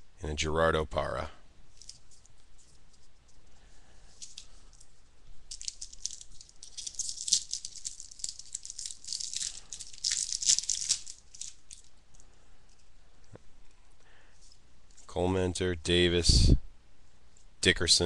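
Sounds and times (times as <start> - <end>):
foil wrapper crinkling and tearing: 4.2 - 12.0.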